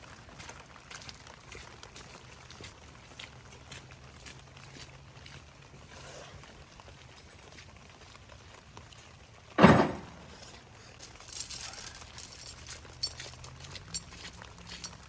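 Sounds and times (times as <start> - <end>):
light clicks and rattles: 11.0 - 15.0.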